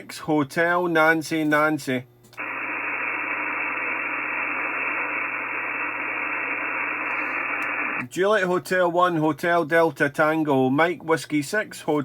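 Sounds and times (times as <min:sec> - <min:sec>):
radio receiver hiss: 0:02.4 - 0:08.1.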